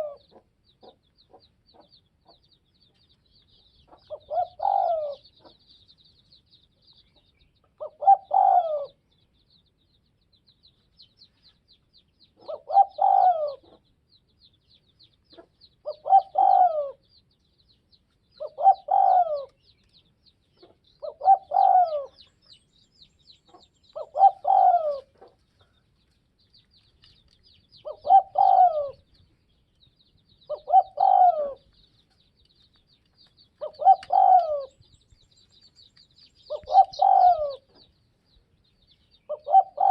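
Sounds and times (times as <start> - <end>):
dove cooing: 0.0 - 1.0, 4.0 - 5.6, 7.8 - 9.0, 12.4 - 13.8, 15.8 - 17.0, 18.4 - 19.6, 20.6 - 22.3, 24.0 - 25.4, 27.8 - 29.1, 30.5 - 31.7, 33.6 - 34.8, 36.5 - 37.9, 39.3 - 39.9.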